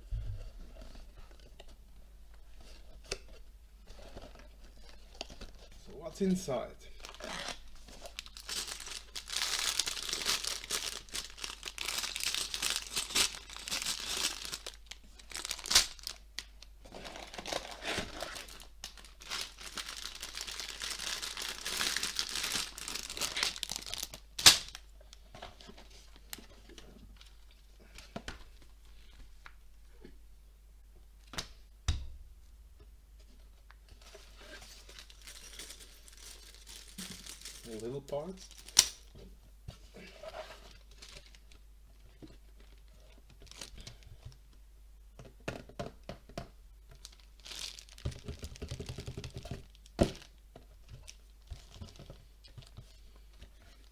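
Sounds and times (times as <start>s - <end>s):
packaging rustling: 6.9s - 24.8s, 34.0s - 39.1s, 47.0s - 50.4s
packaging crinkling and tearing: 7.0s - 24.9s, 34.0s - 39.1s, 42.6s - 44.1s, 46.9s - 50.4s.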